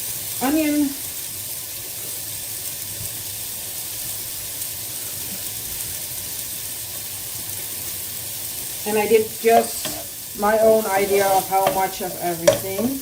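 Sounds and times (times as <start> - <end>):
food sizzling in a pan: 0.0 - 13.0.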